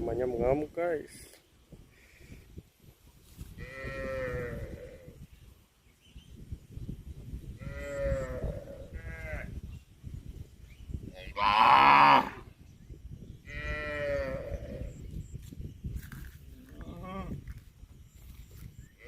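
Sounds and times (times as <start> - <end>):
cattle mooing: 11.4 - 12.4.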